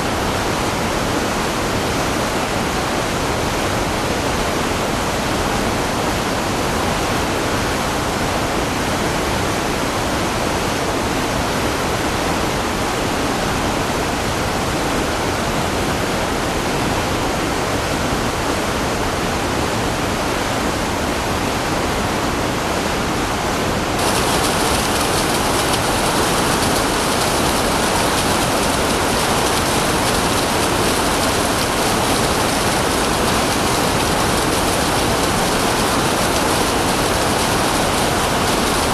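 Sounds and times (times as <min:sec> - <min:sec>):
waterfall rushing: 0:23.9 - 0:38.9.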